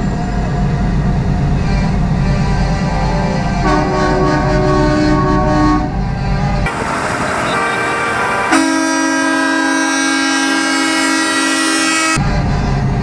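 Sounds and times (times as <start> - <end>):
traffic noise: 0.0 - 13.0
truck air horn blast: 1.7 - 6.0, 6.7 - 12.2.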